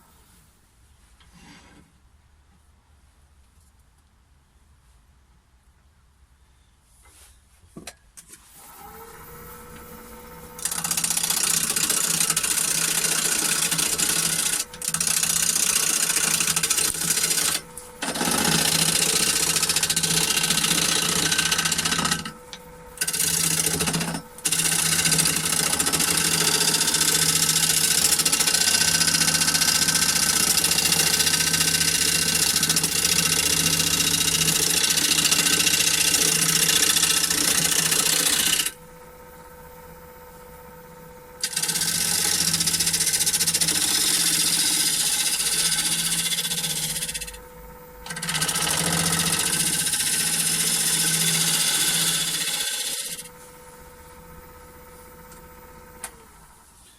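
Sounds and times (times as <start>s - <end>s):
lathe humming: 8.6s - 38.8s, 41.4s - 53.8s
gouge shaving spinning wood: 8.8s - 22.4s, 23.0s - 38.8s, 41.4s - 47.3s, 48.1s - 53.3s.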